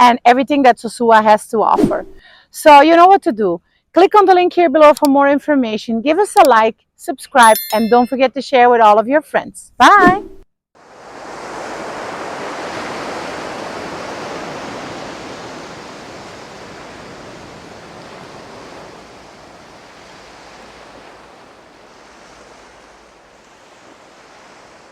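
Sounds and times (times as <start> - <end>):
ocean surf rushing: 10.8 - 24.9.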